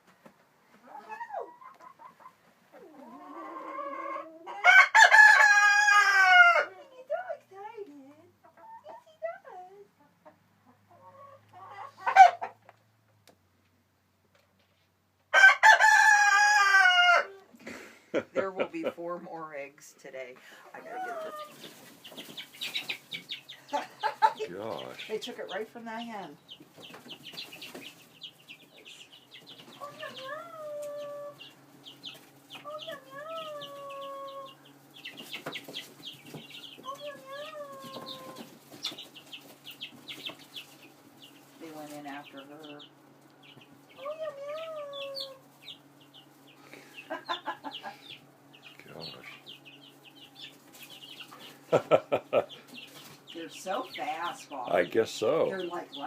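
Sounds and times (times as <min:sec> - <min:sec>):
chickens clucking softly: 0:00.7 - 0:04.7, 0:08.4 - 0:09.2, 0:09.9 - 0:12.8, 0:20.7 - 0:56.0
chicken squawk: 0:00.8 - 0:06.8, 0:10.9 - 0:12.6, 0:15.3 - 0:17.5, 0:20.7 - 0:25.6, 0:28.8 - 0:41.4, 0:43.4 - 0:53.1
chicken long drawn-out call: 0:02.8 - 0:06.7, 0:15.3 - 0:17.5, 0:29.8 - 0:31.6, 0:32.6 - 0:34.7, 0:36.8 - 0:38.5, 0:43.9 - 0:45.5.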